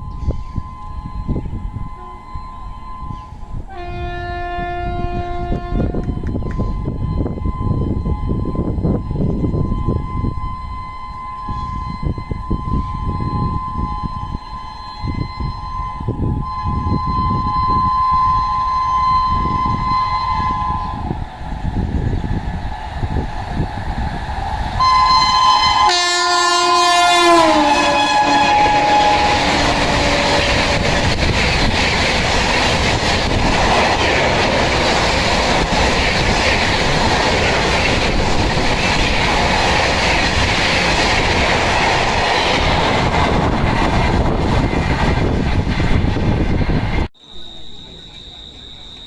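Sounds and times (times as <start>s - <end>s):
shrill locomotive horn: 0.0s - 22.2s, 24.8s - 35.0s
train coaches rushing and clacking: 0.0s - 49.0s.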